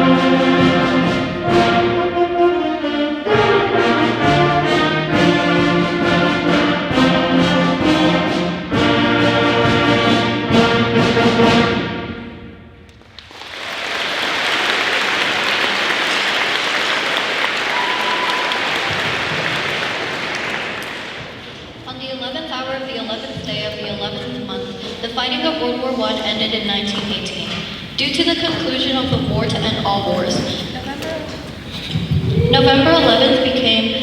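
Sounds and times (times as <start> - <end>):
concert band playing a march: 0.0 - 12.8, 23.9 - 34.0
audience applause: 13.0 - 21.6.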